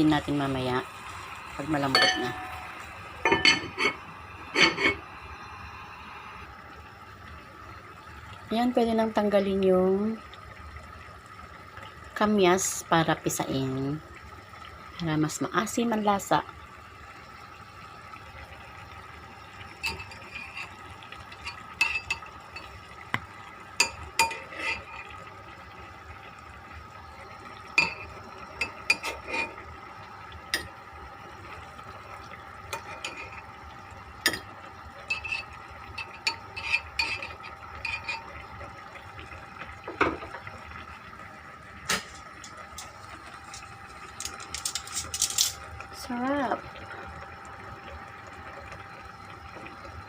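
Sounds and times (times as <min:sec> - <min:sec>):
faint steady hum: 0:00.0 - 0:50.0
utensils clinking and scraping: 0:41.9 - 0:45.6.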